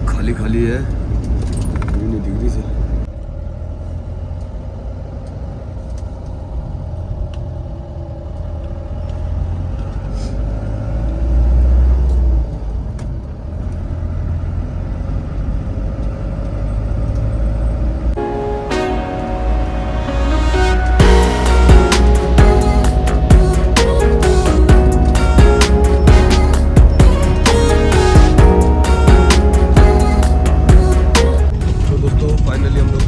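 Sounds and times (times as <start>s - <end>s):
vehicle engine and road rumble: 0.0s - 18.2s, 21.2s - 33.0s
music: 18.2s - 33.0s.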